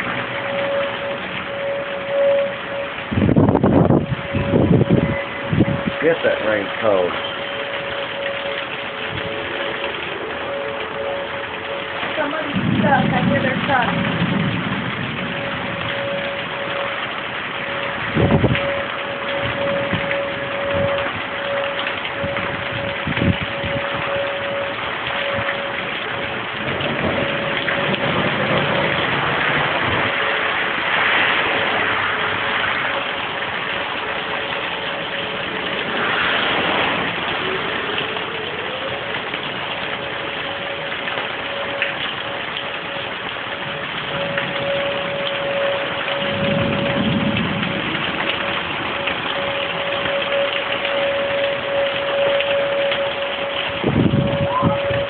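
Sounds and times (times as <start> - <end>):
low rumble: 0.0 - 34.0
heavy rain pouring: 0.0 - 55.0
tornado warning siren: 0.0 - 55.0.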